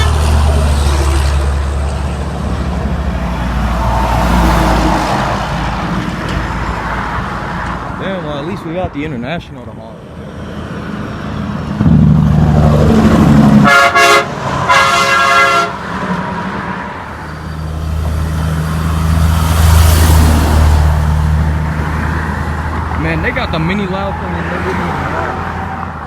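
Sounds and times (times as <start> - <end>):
heavy truck engines passing: 0.0 - 26.0
truck horn blasts: 13.6 - 16.0.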